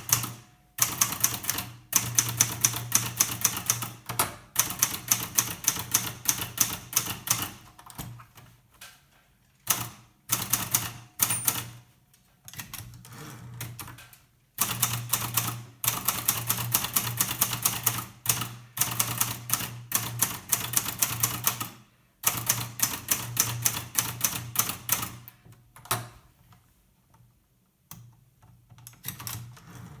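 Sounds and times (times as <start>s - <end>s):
manual typewriter keystrokes: 0.0s - 8.1s, 28.8s - 29.5s.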